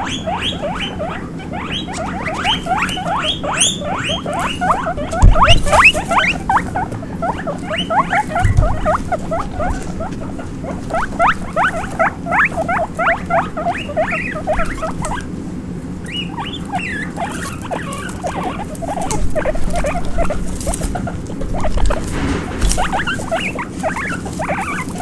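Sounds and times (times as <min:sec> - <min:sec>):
baby guinea pigs squeaking: 0:00.0 - 0:25.0.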